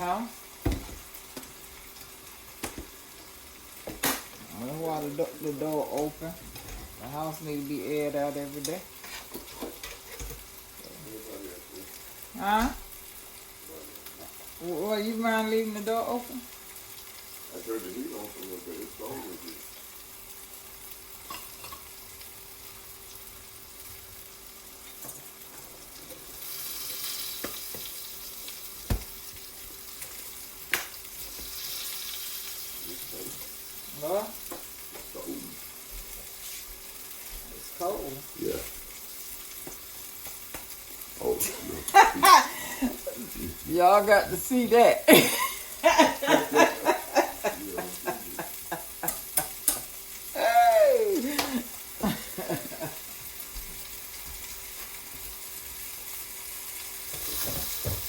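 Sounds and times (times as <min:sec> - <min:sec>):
food sizzling in a frying pan: 0:00.0 - 0:58.0
utensil scraping frying pan: 0:08.2 - 0:10.7, 0:21.2 - 0:22.0, 0:41.4 - 0:50.3, 0:56.8 - 0:58.0.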